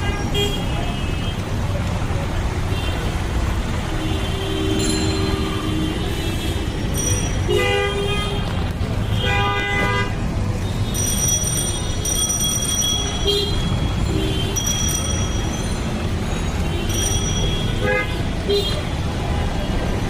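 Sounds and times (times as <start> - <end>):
vehicle horns honking: 0.0 - 1.4, 3.9 - 6.8, 7.4 - 11.0, 13.2 - 14.6, 16.6 - 19.0
road traffic rumble: 0.0 - 20.0.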